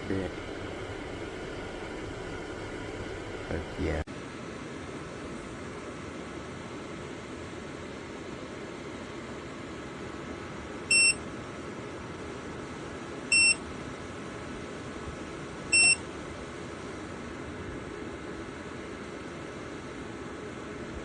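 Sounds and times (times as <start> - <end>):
heater fan running: 0.0 - 21.0
high electronic beeps: 10.9 - 11.2, 13.3 - 13.6, 15.8 - 16.0.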